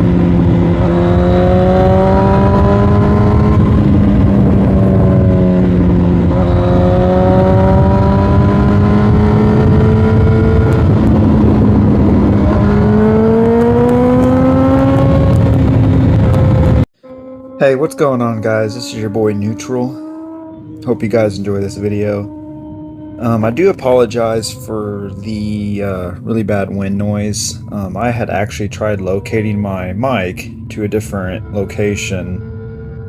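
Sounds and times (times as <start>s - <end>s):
motorcycle engine accelerating: 0.0s - 16.9s, 17.6s - 33.0s
wind noise on microphone: 0.0s - 16.9s.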